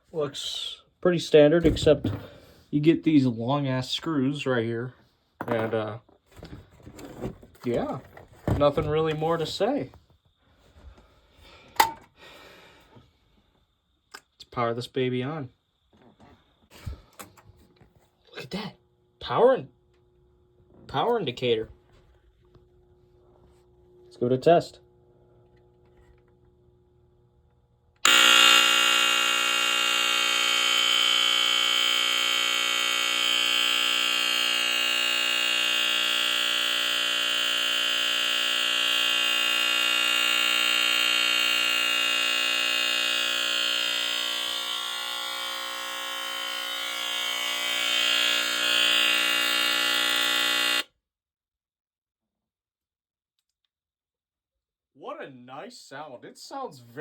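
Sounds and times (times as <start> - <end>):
smoke alarm horn: 28.0 - 50.9.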